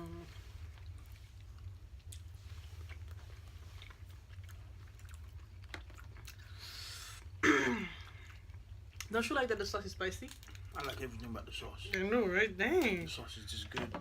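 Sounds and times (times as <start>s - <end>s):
chewing crab legs: 0.4s - 9.2s, 10.1s - 12.0s.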